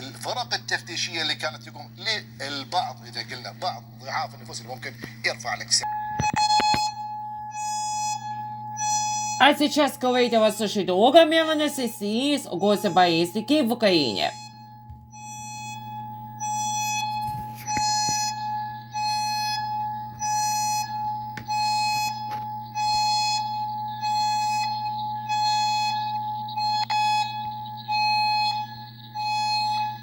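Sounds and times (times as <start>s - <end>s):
low steady hum: 0.0s - 30.0s
pulsing warning siren tone: 5.8s - 30.0s.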